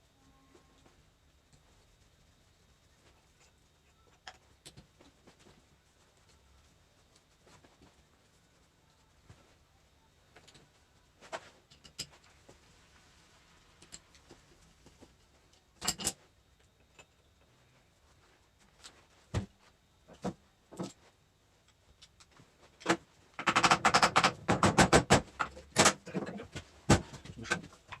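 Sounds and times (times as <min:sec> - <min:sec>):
metal tools clicking and clinking: 0:15.8 - 0:16.2.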